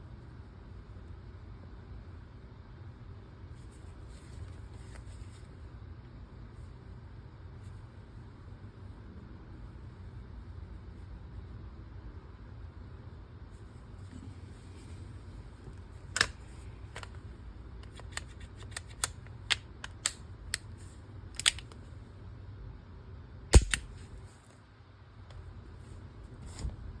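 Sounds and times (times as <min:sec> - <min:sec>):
revolver metallic clicks: 0:21.4 - 0:21.8, 0:23.5 - 0:24.0.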